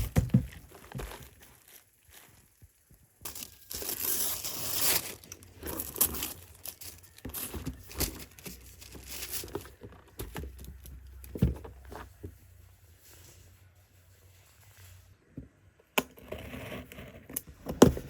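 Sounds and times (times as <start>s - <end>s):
plastic wrapping crinkling: 0.4s - 12.4s
packaging tearing: 3.3s - 7.3s.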